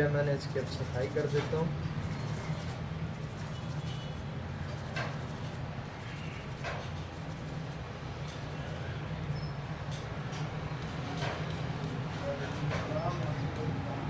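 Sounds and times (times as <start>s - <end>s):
scratchy scrubbing of circuit board: 0.4s - 9.1s.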